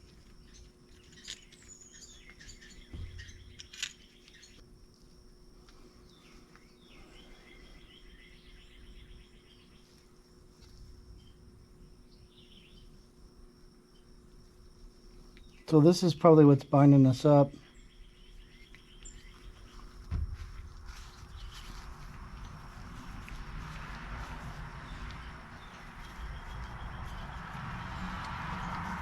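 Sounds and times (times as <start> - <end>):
faint high chirping: 0.0 - 4.6
small metal parts clicking: 0.9 - 1.7, 3.3 - 4.6
dull knock: 2.9 - 3.3, 20.1 - 20.6.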